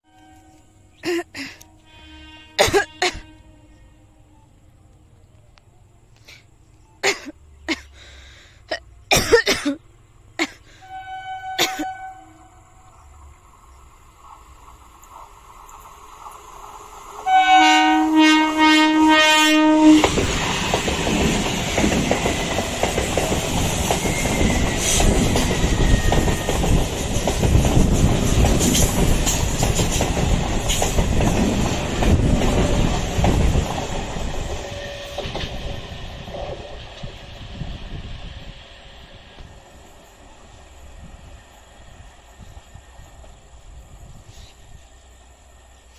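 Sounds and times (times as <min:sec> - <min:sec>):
train passing with rail noise: 0:00.0 - 0:45.9
locomotive horn short blasts: 0:01.8 - 0:04.1, 0:10.8 - 0:12.7, 0:17.2 - 0:20.1.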